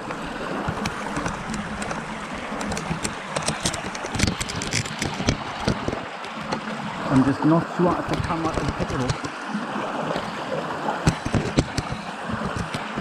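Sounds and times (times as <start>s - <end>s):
handling clicks and rustles: 0.0s - 6.7s, 7.8s - 9.4s, 11.0s - 13.0s
stream rushing: 0.0s - 13.0s.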